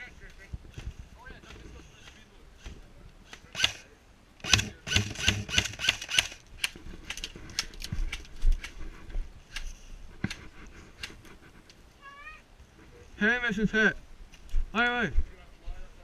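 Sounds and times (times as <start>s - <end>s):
airsoft gun shots: 4.4s - 6.4s.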